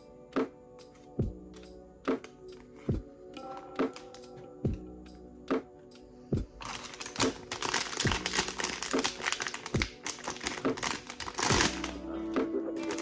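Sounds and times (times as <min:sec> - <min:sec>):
background music with soft beat: 0:00.0 - 0:13.0
packaging crinkling: 0:06.6 - 0:12.0, 0:12.8 - 0:13.0.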